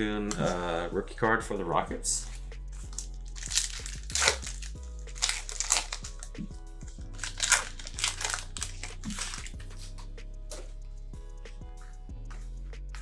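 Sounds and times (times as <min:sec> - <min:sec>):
quiet background music: 0:00.0 - 0:13.0
plastic wrapper crinkling: 0:02.2 - 0:06.3, 0:07.1 - 0:09.6.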